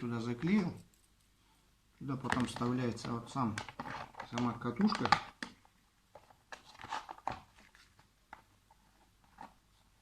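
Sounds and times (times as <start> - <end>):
plastic parts clicking and scraping: 2.2 - 9.6.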